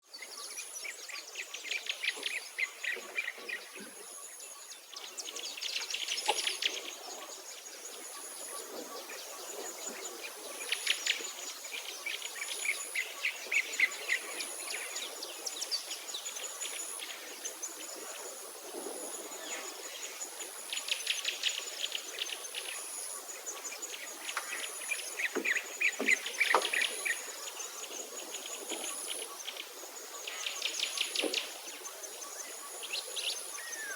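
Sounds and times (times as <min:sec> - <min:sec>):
insects chirping: 0:05.8 - 0:33.9.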